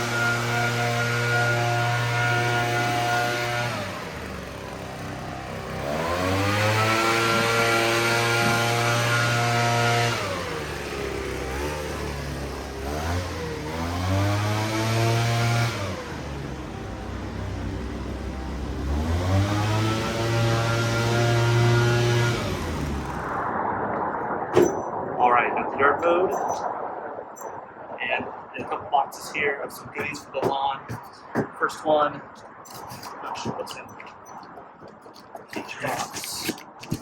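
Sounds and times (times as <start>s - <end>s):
lawn mower engine running: 0.0s - 23.5s.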